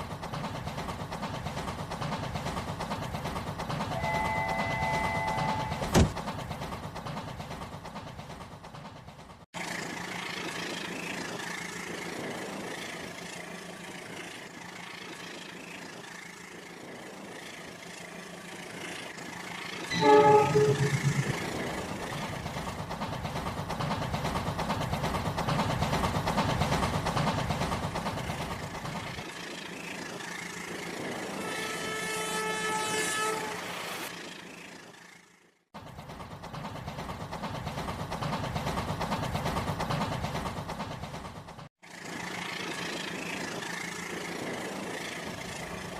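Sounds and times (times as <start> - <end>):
train running: 0.0 - 45.9
train horn: 4.0 - 5.8, 19.9 - 21.4, 31.3 - 34.1.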